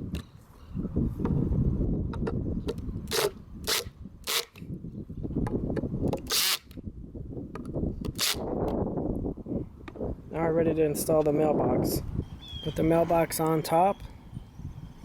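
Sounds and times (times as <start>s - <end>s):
power drill driving screws: 3.1s - 4.6s, 6.2s - 6.7s, 8.1s - 8.4s.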